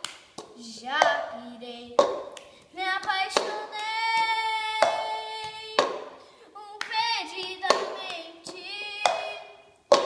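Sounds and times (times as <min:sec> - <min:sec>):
sharp hand claps: 0:00.0 - 0:00.4, 0:02.0 - 0:06.1, 0:06.8 - 0:10.0
person singing: 0:02.8 - 0:06.0, 0:06.6 - 0:09.6.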